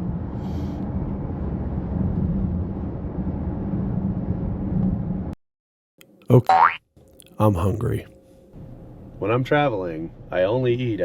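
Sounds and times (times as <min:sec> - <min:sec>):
vehicle road and engine rumble: 0:00.0 - 0:05.4.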